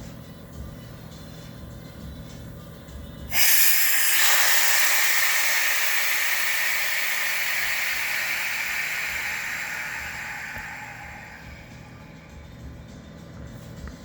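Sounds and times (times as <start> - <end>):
pressurised gas hissing: 3.3 - 12.4.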